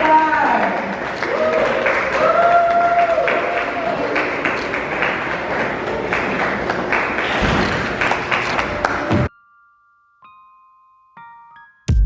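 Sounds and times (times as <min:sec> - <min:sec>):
audience applauding: 0:00.0 - 0:09.3.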